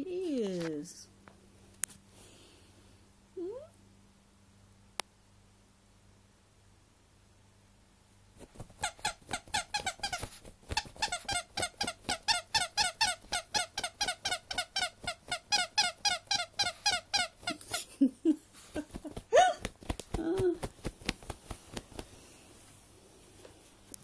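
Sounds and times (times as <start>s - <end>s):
rapid rhythmic squeaking toy: 8.7s - 17.8s.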